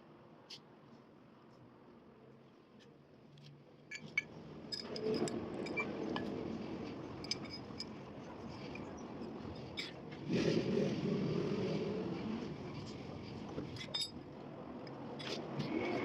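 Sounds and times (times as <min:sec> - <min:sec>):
metal parts clinking and scraping: 0:03.9 - 0:06.4, 0:07.1 - 0:10.0, 0:13.6 - 0:14.2.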